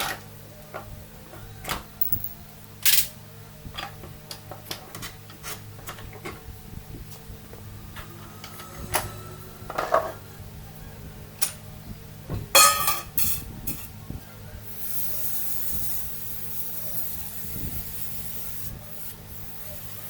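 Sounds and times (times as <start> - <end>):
metal tools clinking and clattering: 2.0 - 3.1, 12.5 - 13.9
aerosol can spraying hiss: 14.7 - 20.0.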